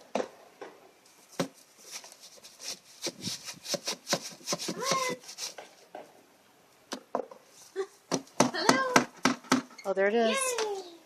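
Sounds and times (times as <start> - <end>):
dry nest material rustling: 1.2 - 5.7.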